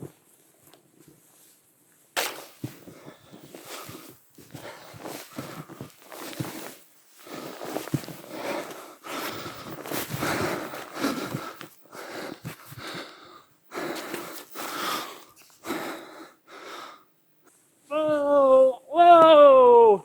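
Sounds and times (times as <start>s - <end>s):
footsteps in snow: 2.3s - 13.0s
man breathing hard and wheezing: 7.2s - 17.1s.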